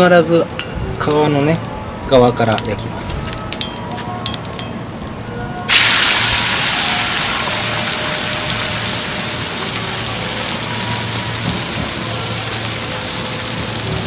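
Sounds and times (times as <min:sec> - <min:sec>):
chicken sizzling in a frying pan: 0:05.7 - 0:14.0.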